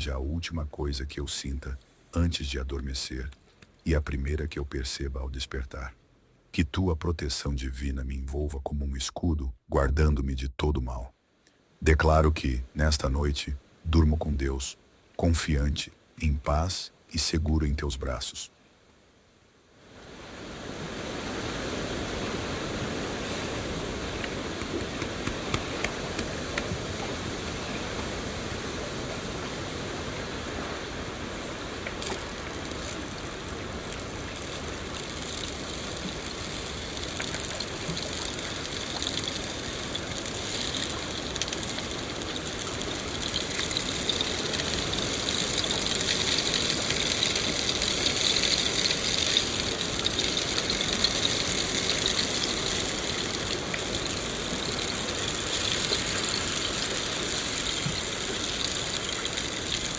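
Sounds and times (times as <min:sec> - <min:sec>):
steady rain falling: 0:00.0 - 0:08.8, 0:19.8 - 0:59.9.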